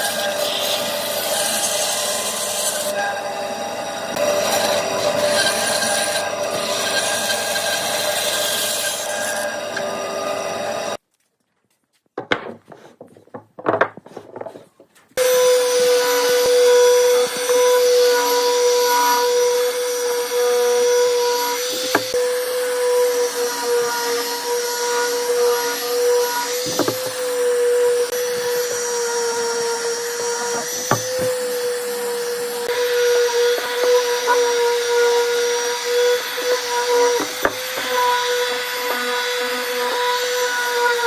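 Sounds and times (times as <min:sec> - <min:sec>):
electric power tool whining: 0:15.2 - 0:41.0.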